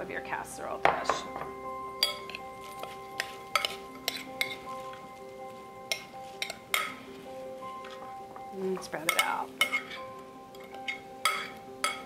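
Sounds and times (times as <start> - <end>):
soft background music: 0.0 - 12.0
utensil clinking against dishes: 0.9 - 4.9, 8.8 - 12.0.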